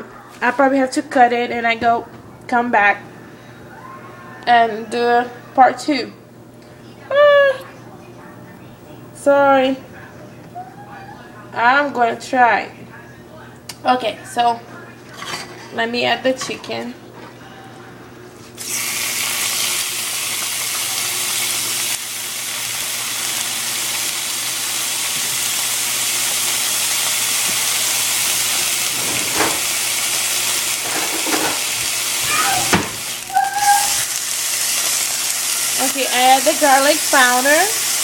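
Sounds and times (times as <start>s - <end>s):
chicken sizzling in hot oil: 18.6s - 38.0s
utensil knocks: 28.9s - 29.8s.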